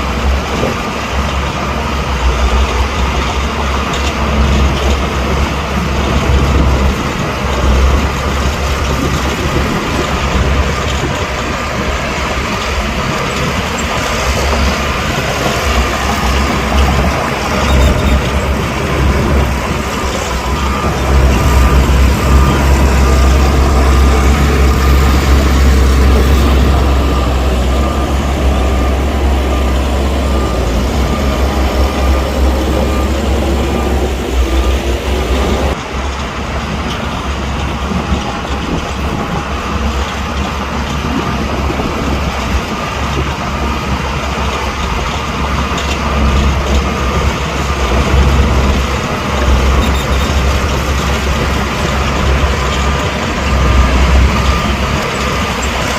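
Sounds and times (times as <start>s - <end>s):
heavy diesel machinery rumbling: 0.0s - 55.9s
thin engine whine: 13.8s - 35.8s.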